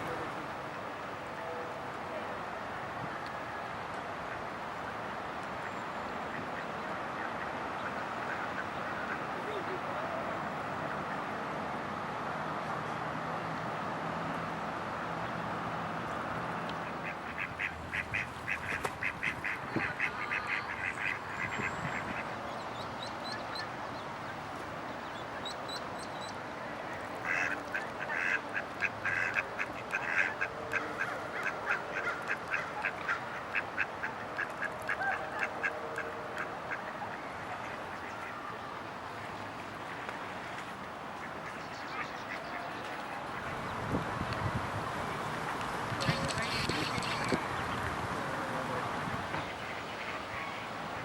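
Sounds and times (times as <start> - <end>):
ducklings peeping: 46.0 - 47.8.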